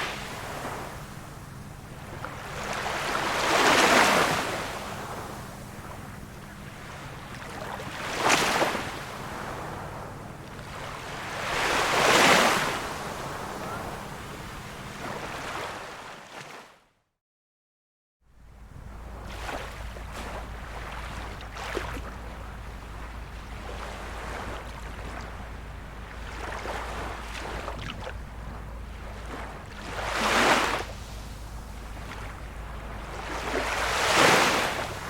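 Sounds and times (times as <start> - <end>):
low steady rumble: 0.0 - 15.5, 18.3 - 35.0
small sea waves washing in: 0.0 - 16.7, 18.4 - 35.0.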